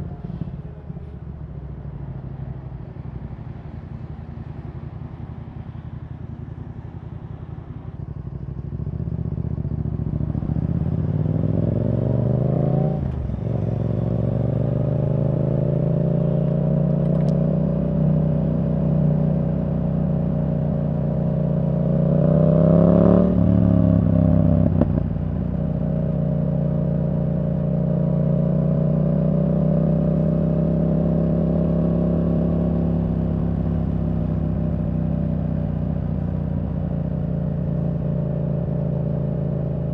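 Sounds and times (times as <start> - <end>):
motorcycle engine revving and shifting: 9.1 - 39.9.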